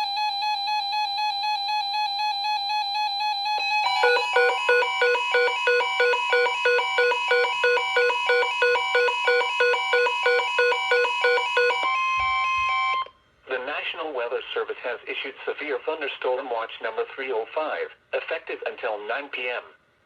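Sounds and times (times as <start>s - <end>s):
pulsing electronic beep: 3.8s - 13.1s.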